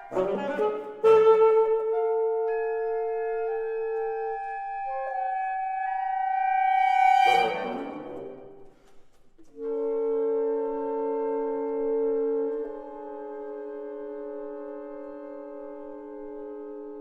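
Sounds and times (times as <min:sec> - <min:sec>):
reed quintet playing: 0:00.0 - 0:04.2, 0:06.2 - 0:08.7.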